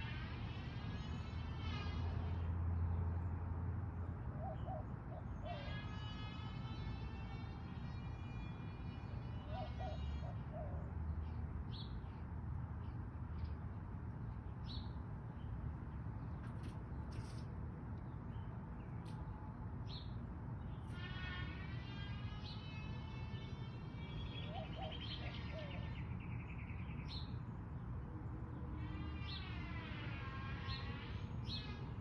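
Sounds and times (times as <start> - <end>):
bird drawn-out call: 9.4 - 10.9, 24.1 - 26.2.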